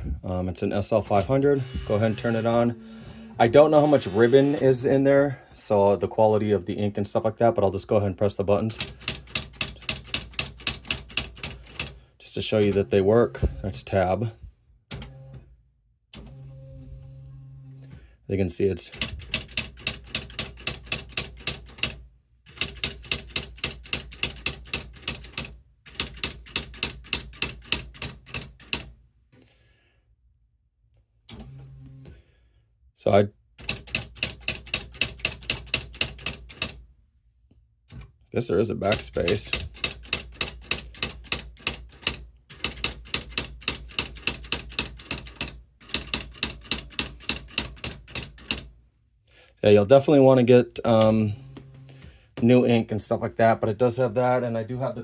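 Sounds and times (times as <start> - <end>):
electric typewriter typing: 1.0 - 2.8, 8.8 - 12.0, 18.9 - 28.9, 33.6 - 36.8, 38.8 - 48.7.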